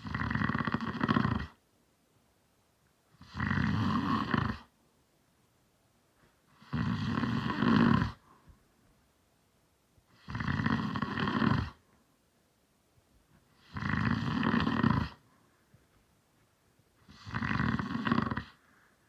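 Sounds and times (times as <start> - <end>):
man snoring: 0.0 - 1.6, 3.2 - 4.7, 6.6 - 8.2, 10.2 - 11.8, 13.6 - 15.2, 17.1 - 18.6.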